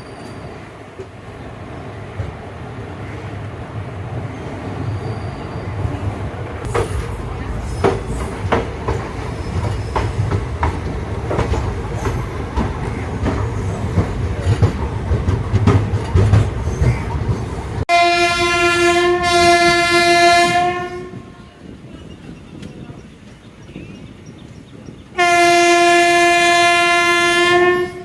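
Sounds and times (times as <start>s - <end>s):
train rumbling on rails: 0.0s - 28.0s
wheels clicking over rail joints: 6.6s - 17.8s
train horn: 17.9s - 21.6s, 25.2s - 28.0s.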